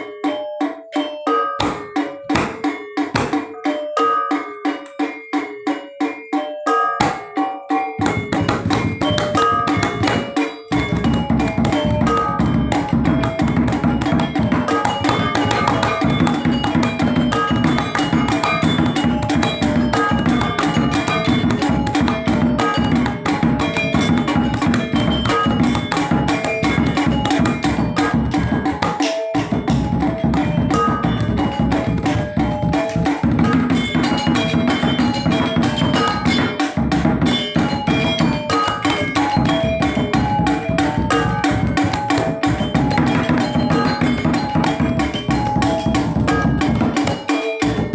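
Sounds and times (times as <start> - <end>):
drums: 0.0 - 47.9
struck bronze metallophones: 0.0 - 47.9.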